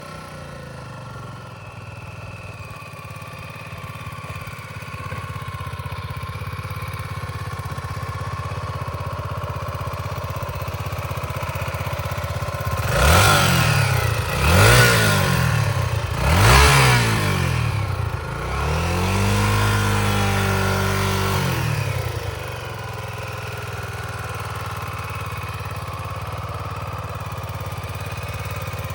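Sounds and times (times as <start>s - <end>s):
motorcycle engine idling and revving: 0.0s - 28.9s.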